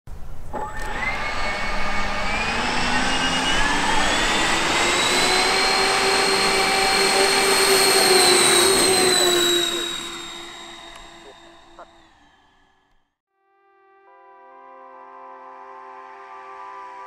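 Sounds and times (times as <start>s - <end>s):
jet engines spooling up: 0.5s - 12.9s
rushing noise: 1.6s - 11.6s.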